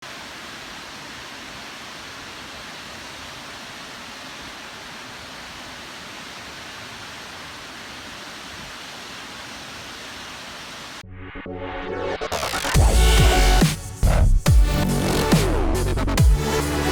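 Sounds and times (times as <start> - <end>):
steady static hiss: 0.0 - 11.0.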